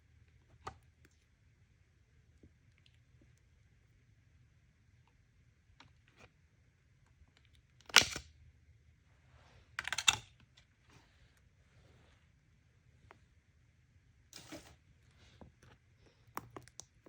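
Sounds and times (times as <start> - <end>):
sharp plastic snap: 7.8 - 8.3
toy packaging clicks: 9.8 - 10.3.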